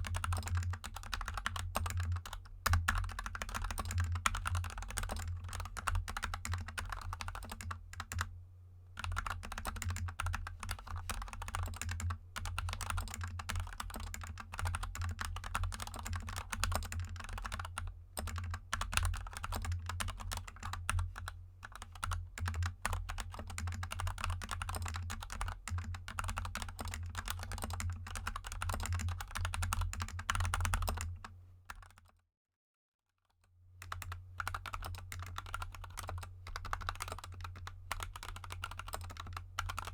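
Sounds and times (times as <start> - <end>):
fast typing on mechanical keyboard: 0.0 - 8.3, 9.0 - 32.1, 33.8 - 39.9.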